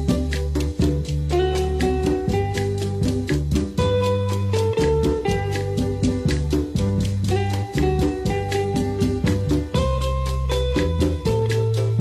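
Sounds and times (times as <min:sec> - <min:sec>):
instrumental dance music: 0:00.0 - 0:12.0.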